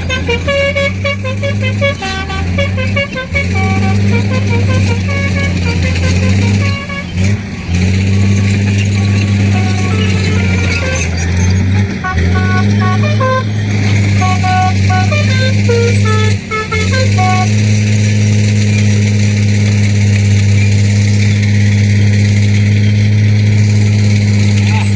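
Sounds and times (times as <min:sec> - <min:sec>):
multi-tone truck horn melody: 0:00.0 - 0:19.0.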